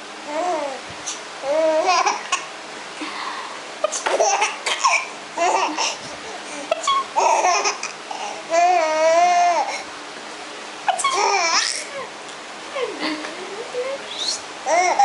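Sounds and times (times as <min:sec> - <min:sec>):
baby laughing: 0:01.4 - 0:02.5, 0:03.8 - 0:09.7, 0:10.9 - 0:12.1, 0:14.7 - 0:15.0.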